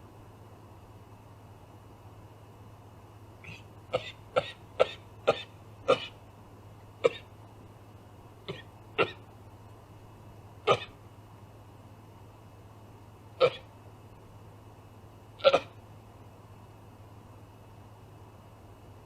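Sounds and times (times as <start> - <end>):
animal cough-like calls: 3.4 - 6.2, 7.0 - 7.3, 8.4 - 9.3, 10.6 - 11.0, 13.4 - 13.7, 15.4 - 15.8.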